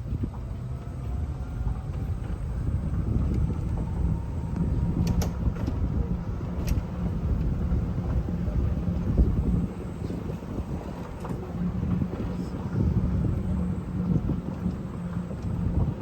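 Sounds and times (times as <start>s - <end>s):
wind buffeting microphone: 0.0s - 16.0s
faint clicks: 6.5s - 7.6s, 14.0s - 15.7s.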